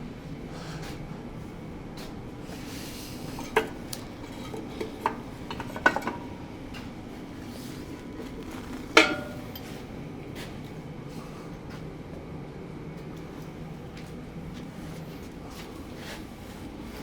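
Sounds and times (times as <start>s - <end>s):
steel parts clanking together: 3.3s - 6.4s, 9.0s - 9.8s.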